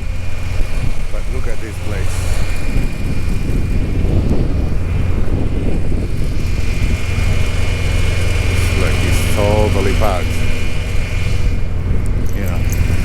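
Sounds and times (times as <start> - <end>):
diesel truck engines idling: 0.0 - 13.0.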